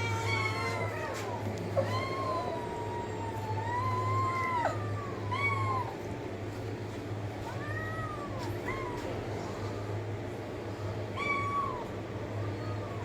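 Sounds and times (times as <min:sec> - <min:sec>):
steady low hum: 0:00.0 - 0:13.0
cat meowing: 0:11.2 - 0:11.9.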